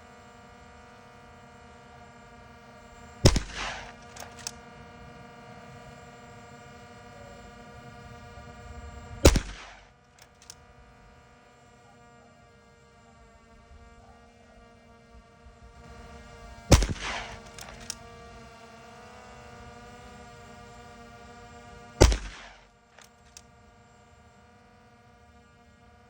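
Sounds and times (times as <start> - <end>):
air rifle shots: 3.2 - 4.6, 9.2 - 10.5, 16.7 - 18.0, 22.0 - 23.2.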